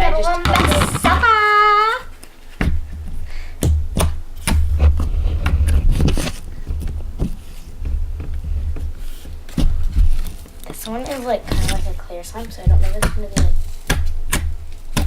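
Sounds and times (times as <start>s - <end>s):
low rumble of handling: 0.0s - 15.0s.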